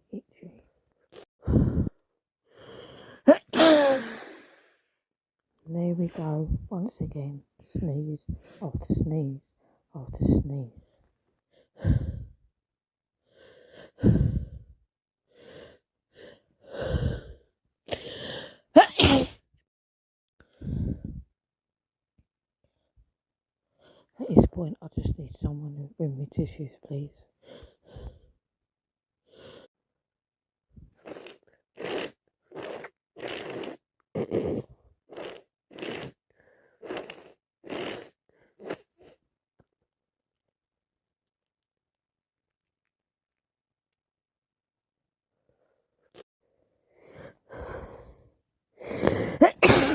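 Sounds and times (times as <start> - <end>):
gasping in-breaths: 1.4 - 4.9, 11.5 - 12.4, 13.2 - 18.7, 20.4 - 21.2, 46.9 - 49.5
woman sneezing: 3.3 - 4.4, 18.8 - 19.4, 49.2 - 49.9.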